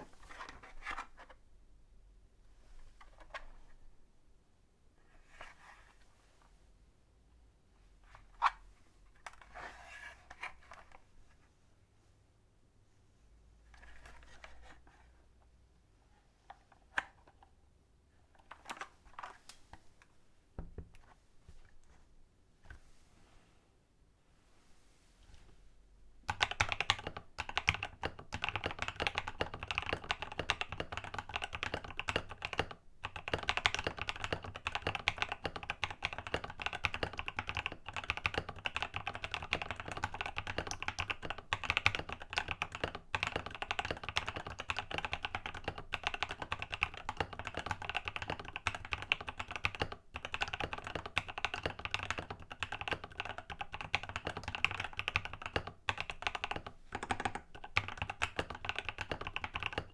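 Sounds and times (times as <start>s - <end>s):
fast typing on mechanical keyboard: 26.3s - 59.9s.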